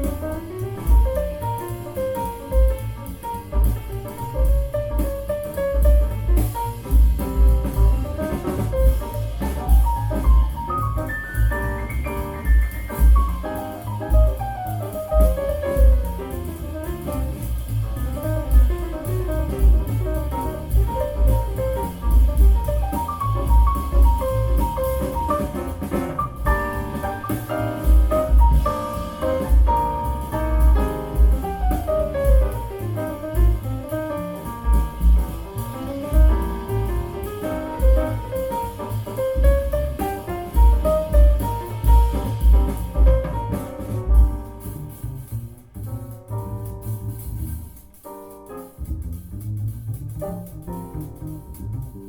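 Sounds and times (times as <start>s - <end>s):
jazz music over loudspeakers: 0.0s - 52.0s.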